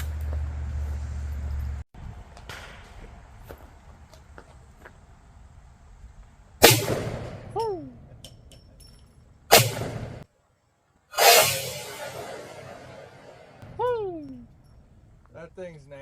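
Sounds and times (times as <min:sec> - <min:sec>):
gunshots: 0:06.6 - 0:07.6, 0:09.5 - 0:10.2, 0:11.2 - 0:13.8
short falling whine: 0:11.2 - 0:14.5.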